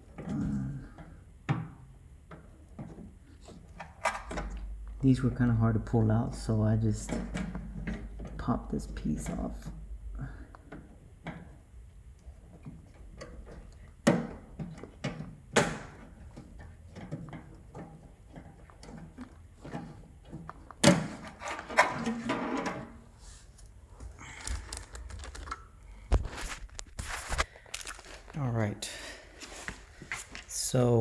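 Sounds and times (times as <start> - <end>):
plastic parts clattering: 24.0 - 28.4
plastic parts clicking and knocking: 24.2 - 28.4.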